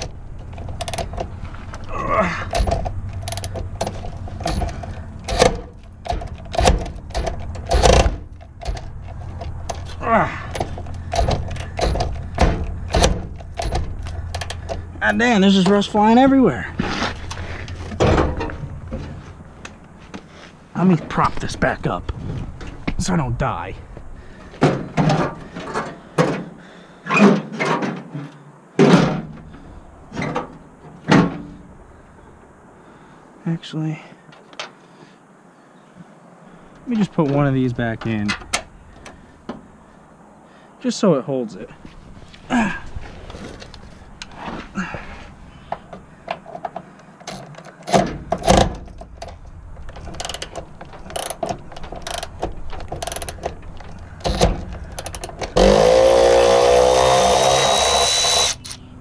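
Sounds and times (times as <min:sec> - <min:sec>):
sheet metal clanks and knocks: 0:10.6 - 0:14.8, 0:17.9 - 0:19.2
tool rapid mechanical clatter: 0:55.0 - 0:58.8.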